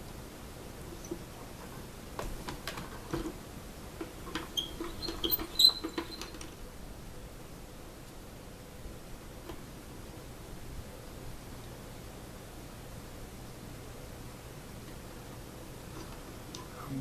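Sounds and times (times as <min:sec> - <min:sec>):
small parts clicking and scratching: 0:04.0 - 0:06.6.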